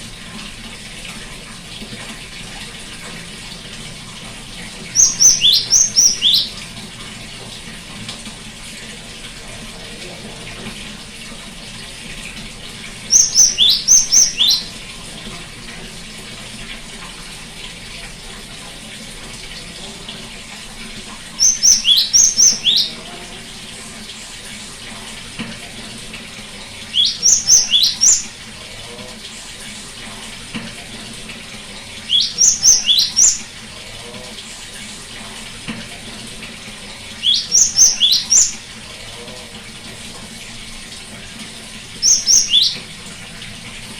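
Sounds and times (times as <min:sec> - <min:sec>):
bird singing high whistled notes: 0:04.9 - 0:06.5, 0:13.1 - 0:14.7, 0:21.4 - 0:23.0, 0:26.9 - 0:28.3, 0:32.1 - 0:33.4, 0:37.2 - 0:38.6, 0:42.0 - 0:42.8.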